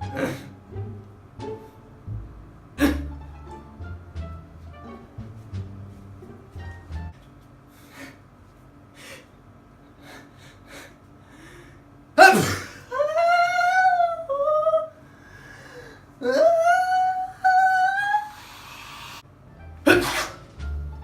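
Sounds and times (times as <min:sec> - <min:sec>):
loud sneeze: 0:02.8 - 0:03.1, 0:12.2 - 0:12.9, 0:19.9 - 0:20.5
high-pitched vocal squeals: 0:16.2 - 0:19.2
person sniffing: 0:19.9 - 0:20.5.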